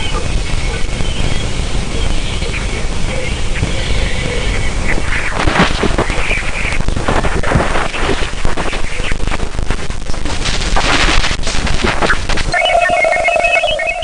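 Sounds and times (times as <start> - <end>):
dense sharp crackling: 4.5 - 14.0
electronic beeping tones: 12.5 - 14.0.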